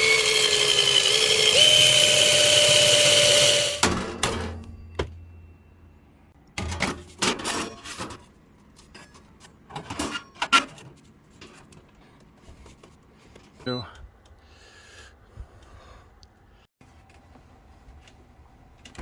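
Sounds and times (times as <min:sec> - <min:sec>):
tools and metal parts clattering: 0:03.8 - 0:05.2, 0:06.6 - 0:11.9.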